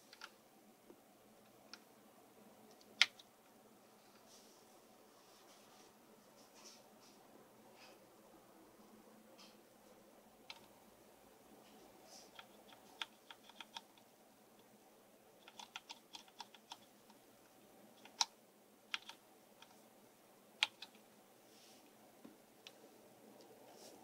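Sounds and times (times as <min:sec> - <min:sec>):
mechanical keyboard typing: 0:12.3 - 0:14.0, 0:15.4 - 0:16.9, 0:17.9 - 0:18.3, 0:18.9 - 0:19.2, 0:20.6 - 0:21.0.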